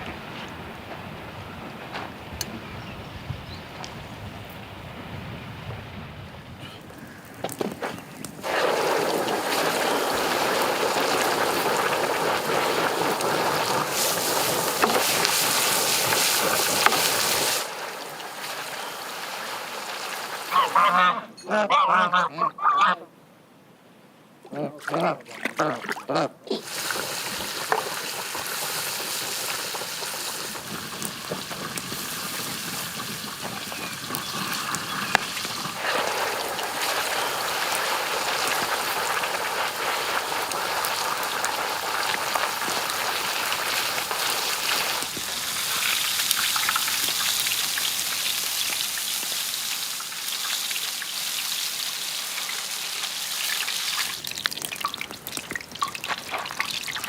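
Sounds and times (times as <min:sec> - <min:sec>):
food sizzling in hot fat: 0:07.0 - 0:21.1, 0:26.5 - 0:57.0.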